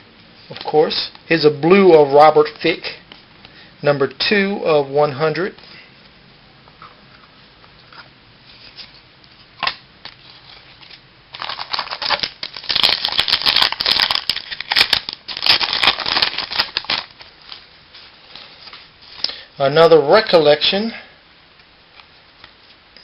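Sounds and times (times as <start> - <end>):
card pack wrapper crackling: 10.4 - 17.7.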